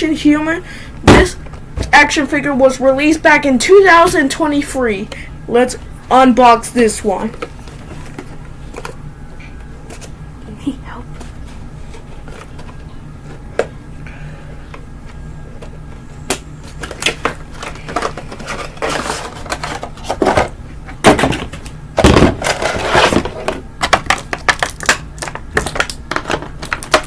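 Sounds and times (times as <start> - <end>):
packaging clicking and crinkling: 16.7 - 20.5, 22.0 - 27.0.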